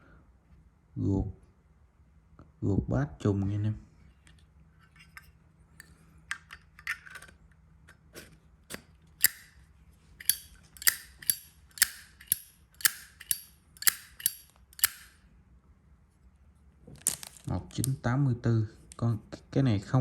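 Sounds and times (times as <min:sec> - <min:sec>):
lighter lid clicking: 0:09.2 - 0:09.5, 0:10.2 - 0:15.1.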